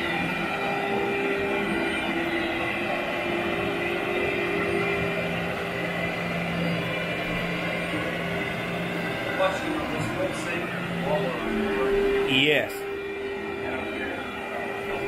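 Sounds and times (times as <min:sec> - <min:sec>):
vacuum cleaner on carpet: 0:00.0 - 0:15.0.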